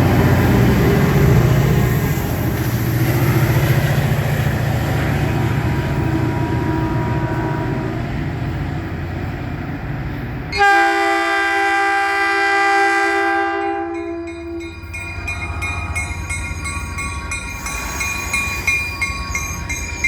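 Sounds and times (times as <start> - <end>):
train rumbling: 0.0 - 20.0
train horn blast: 5.9 - 8.1, 10.6 - 14.7.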